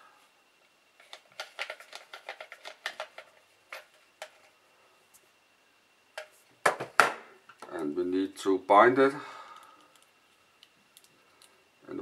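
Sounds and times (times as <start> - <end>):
small plastic parts clicking: 9.6 - 11.5.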